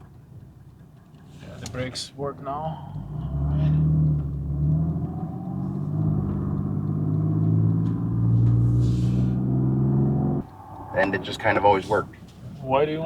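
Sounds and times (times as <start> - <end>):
car engine drone from inside cabin: 2.6 - 12.6.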